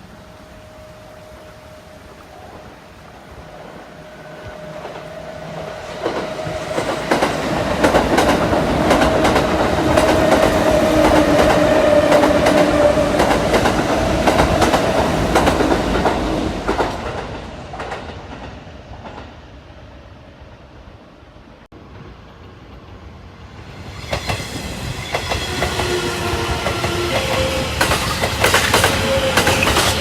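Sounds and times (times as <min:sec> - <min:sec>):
electric train whine: 0:00.0 - 0:18.4, 0:19.0 - 0:30.0
wheels clicking on rail joints: 0:25.1 - 0:30.0.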